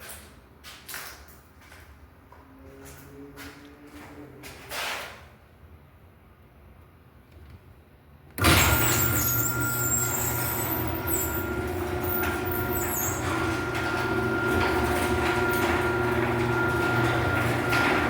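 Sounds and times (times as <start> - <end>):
garage door opener motor humming: 8.4 - 18.0.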